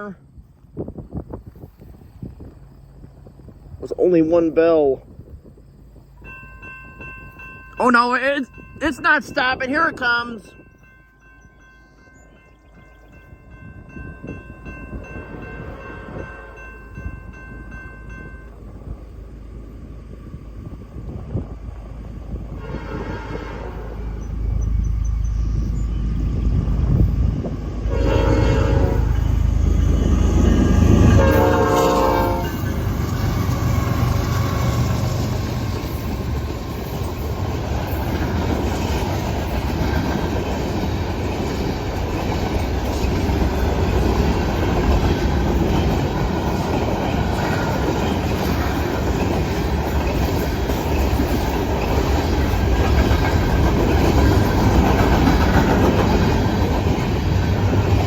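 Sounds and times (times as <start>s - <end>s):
freight train rumbling past: 0.0s - 58.0s
train horn blasts: 22.5s - 24.3s, 27.8s - 34.9s.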